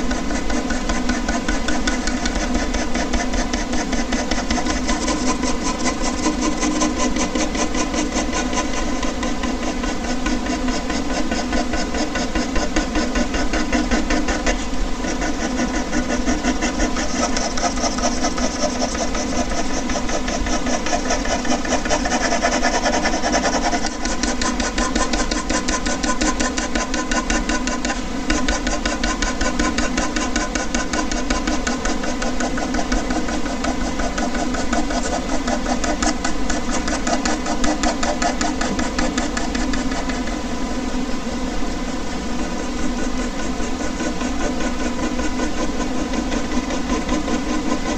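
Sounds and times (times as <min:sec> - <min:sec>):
air conditioner humming: 0:33.1 - 0:47.9.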